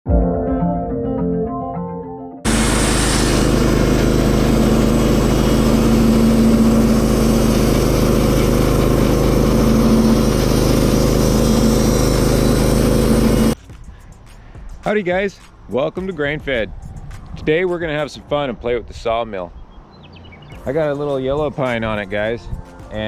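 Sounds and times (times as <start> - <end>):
sawmill engine humming: 2.5 - 13.6.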